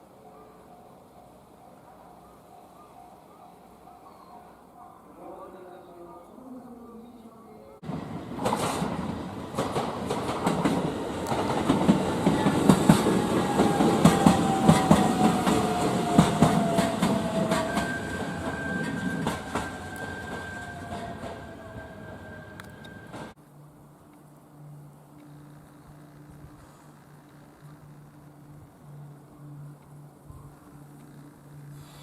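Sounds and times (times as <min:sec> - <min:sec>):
electric train whine: 0:00.0 - 0:04.8, 0:05.4 - 0:32.0
train wheels clacking over rail joints: 0:08.4 - 0:21.6.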